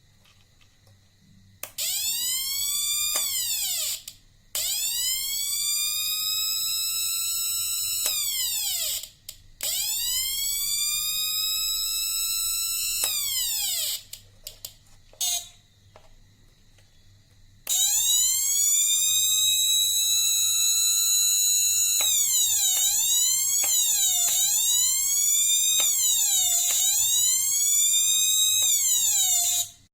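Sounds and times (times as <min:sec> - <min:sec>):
electronic siren wail: 0:17.7 - 0:29.9
clicks: 0:22.0 - 0:29.8.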